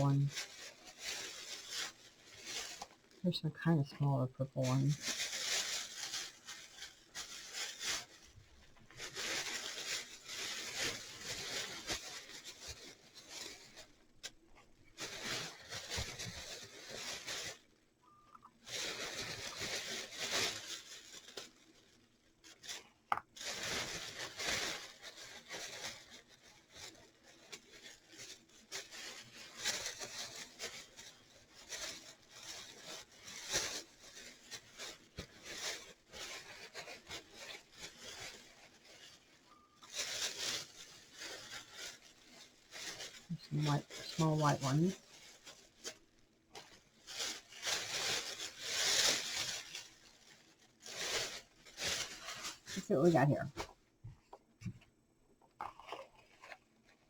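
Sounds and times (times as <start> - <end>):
rustling of artificial flowers: 0.0 - 57.0.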